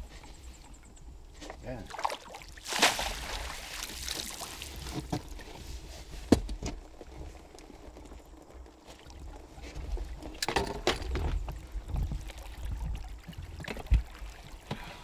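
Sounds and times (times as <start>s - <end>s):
water splashing: 1.8s - 5.1s.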